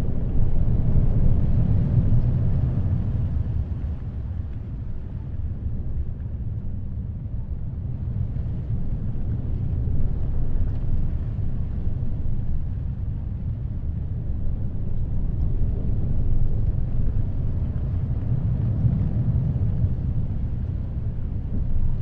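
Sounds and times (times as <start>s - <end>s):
rumble of ocean waves: 0.0s - 22.0s
wind: 0.0s - 22.0s.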